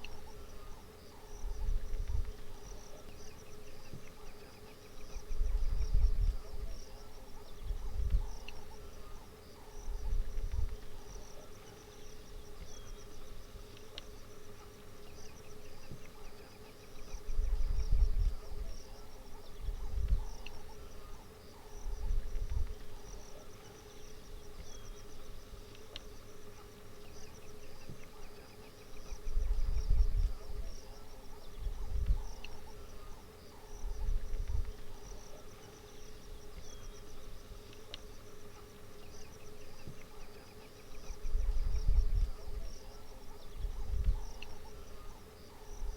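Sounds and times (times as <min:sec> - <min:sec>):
insects chorus: 0:00.0 - 0:45.9.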